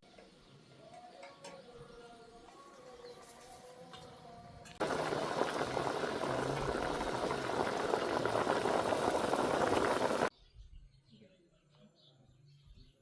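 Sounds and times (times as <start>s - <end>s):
broth bubbling at the boil: 4.8s - 10.3s.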